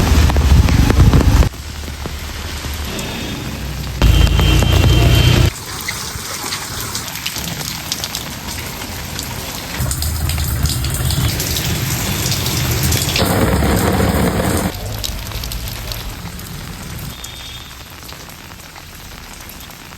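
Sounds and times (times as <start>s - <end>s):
heavy rain falling: 0.0s - 19.9s
deep low rumble: 9.8s - 17.1s.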